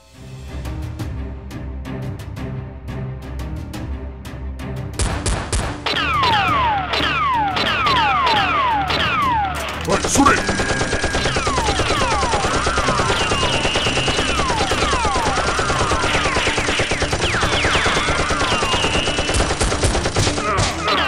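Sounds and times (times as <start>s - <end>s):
rapid automatic gunfire: 9.9s - 20.7s.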